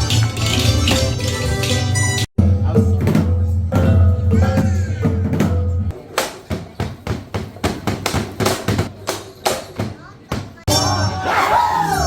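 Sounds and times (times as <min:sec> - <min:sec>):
music with heavy bass and percussion: 0:00.0 - 0:06.0.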